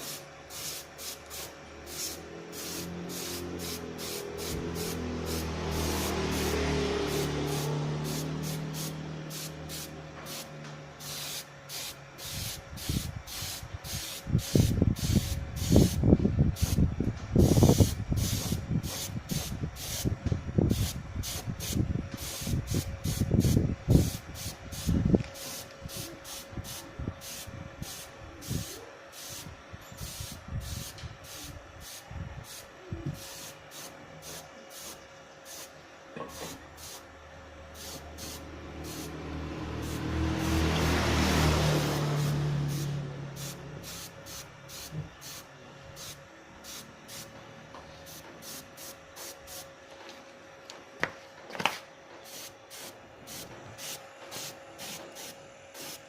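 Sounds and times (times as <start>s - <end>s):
hissing spray bursts: 0.0s - 16.0s, 16.6s - 37.1s, 37.7s - 47.3s, 48.0s - 49.7s, 52.3s - 56.0s.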